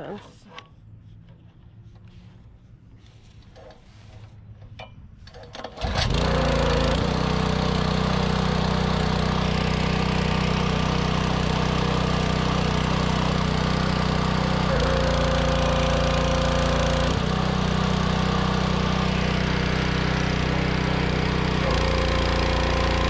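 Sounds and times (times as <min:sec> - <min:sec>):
pressure washer engine running: 0:05.8 - 0:23.0.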